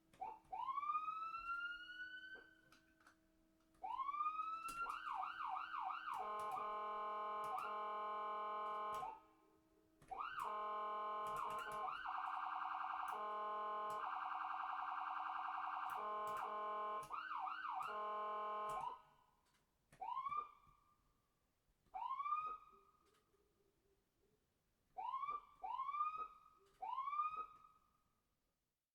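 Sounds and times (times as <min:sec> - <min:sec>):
electronic ambulance siren: 0:00.2 - 0:02.9, 0:03.8 - 0:09.3, 0:10.0 - 0:19.2, 0:20.0 - 0:21.0, 0:22.0 - 0:22.9, 0:25.0 - 0:27.8.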